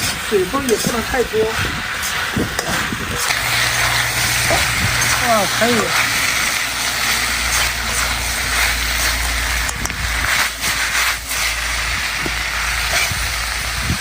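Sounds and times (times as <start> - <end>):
steady hiss: 0.0 - 14.0
wind rumbling on microphone: 1.0 - 5.2, 11.7 - 14.0.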